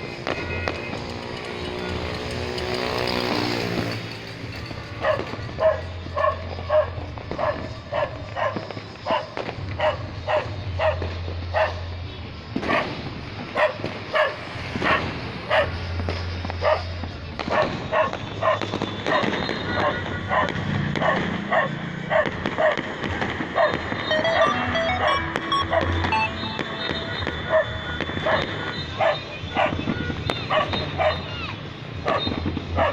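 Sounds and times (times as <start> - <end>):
dog barking: 5.0 - 11.9, 12.6 - 13.0, 13.6 - 15.8, 16.6 - 16.9, 17.5 - 22.8, 23.6 - 23.8, 27.5 - 29.8, 30.5 - 32.9
long steady tone: 24.1 - 27.9.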